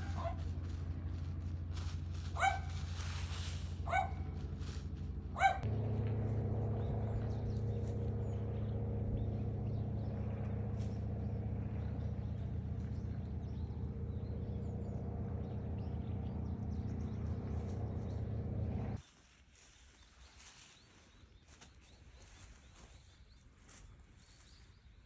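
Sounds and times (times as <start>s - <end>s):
engine running steadily: 0.0s - 19.0s.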